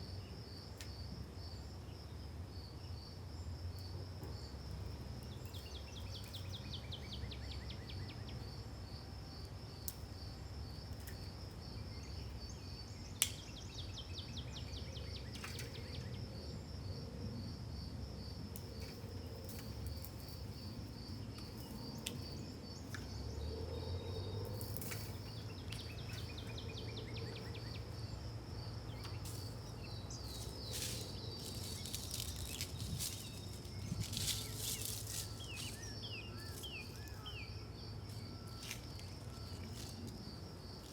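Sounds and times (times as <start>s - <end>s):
insects trilling: 0.0s - 40.9s
bird chirps: 28.9s - 39.9s.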